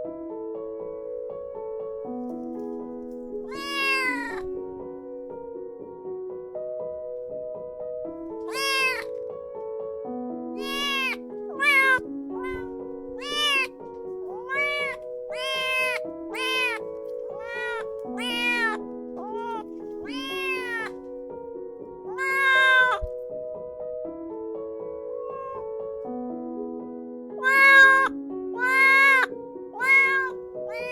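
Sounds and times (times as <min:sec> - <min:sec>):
kitten meowing: 0:03.2 - 0:04.6, 0:08.4 - 0:09.2, 0:10.6 - 0:21.0, 0:22.0 - 0:23.2, 0:25.2 - 0:25.6, 0:27.4 - 0:30.9.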